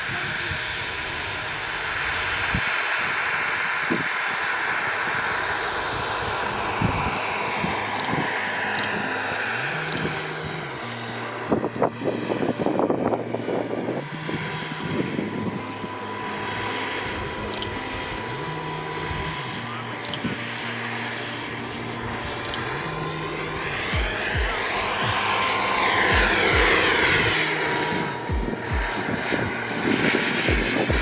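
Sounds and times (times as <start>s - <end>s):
model helicopter rotor whirr: 0.0s - 31.0s.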